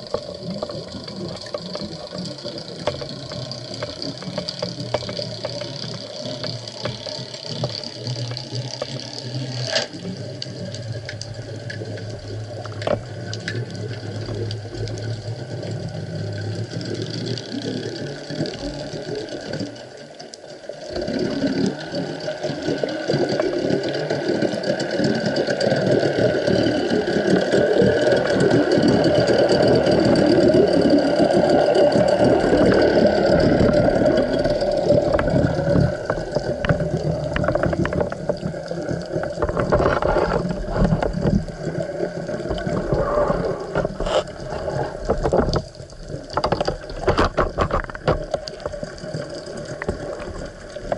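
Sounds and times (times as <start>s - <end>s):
water rushing and crackling: 0.0s - 50.9s.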